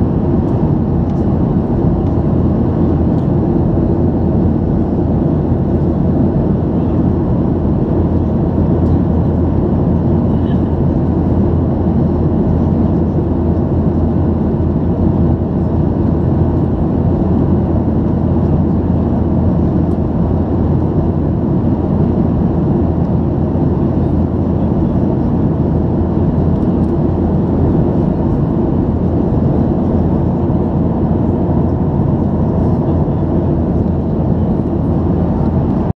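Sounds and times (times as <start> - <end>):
airplane cabin engine drone: 0.0 - 35.9.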